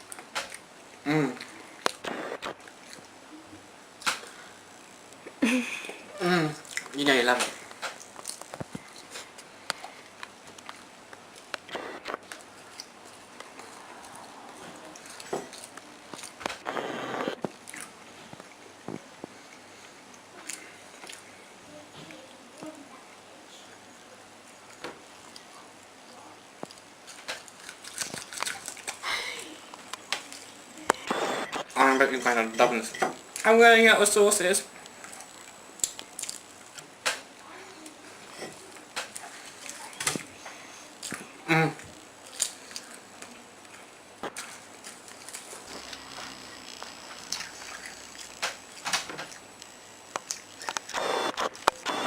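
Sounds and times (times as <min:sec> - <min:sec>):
person chewing food: 0:07.6 - 0:16.5, 0:26.7 - 0:29.0
small clicks: 0:45.1 - 0:52.0.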